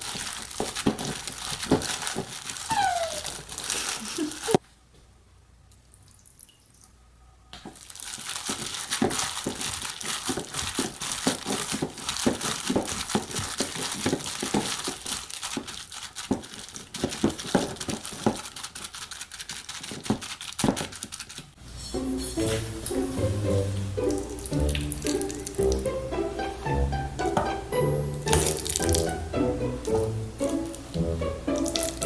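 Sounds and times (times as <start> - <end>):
plastic or paper crinkling: 0.0 - 4.6, 7.7 - 21.6, 24.1 - 25.8, 28.2 - 29.2.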